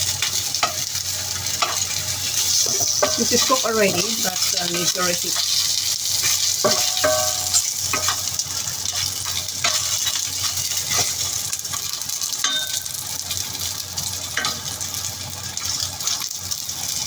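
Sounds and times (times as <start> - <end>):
food sizzling in a wok: 0.0 - 17.0
spatula scraping and clinking wok: 0.2 - 13.0.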